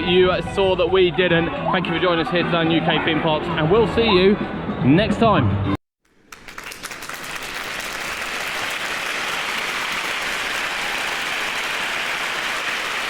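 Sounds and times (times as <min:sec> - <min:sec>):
crowd applauding: 0:06.2 - 0:13.0.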